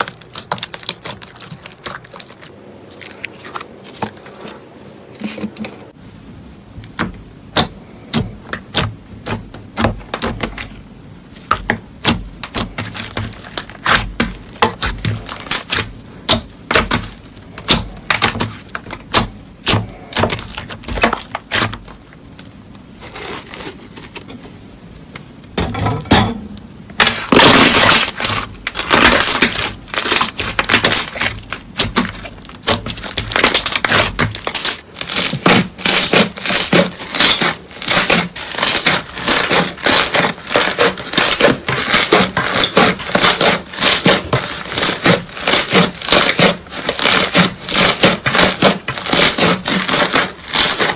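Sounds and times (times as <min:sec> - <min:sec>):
slime crackling and popping: 0:00.0 - 0:03.7, 0:11.5 - 0:23.8, 0:27.1 - 0:50.9.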